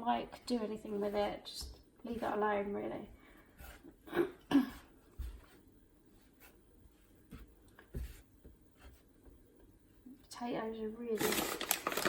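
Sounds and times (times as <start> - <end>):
person clearing throat: 4.0 - 4.9.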